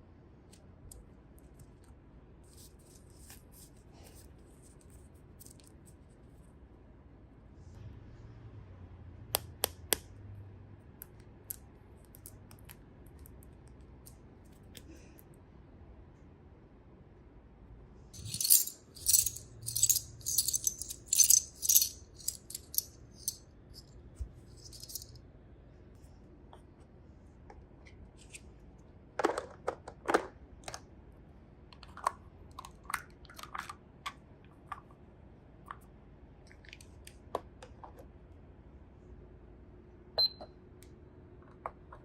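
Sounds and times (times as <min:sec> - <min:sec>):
plastic toy pieces rattling: 0:18.2 - 0:23.4, 0:24.6 - 0:25.2.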